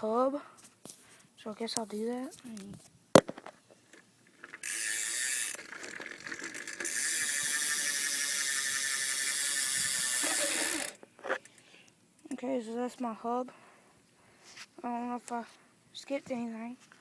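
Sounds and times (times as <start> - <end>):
bicycle hub ticking: 4.3 - 11.7.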